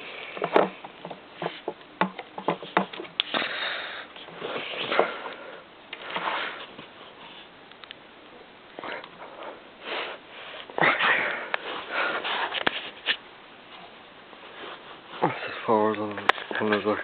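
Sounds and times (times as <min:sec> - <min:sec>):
plastic parts clicking and scraping: 0:00.2 - 0:03.4.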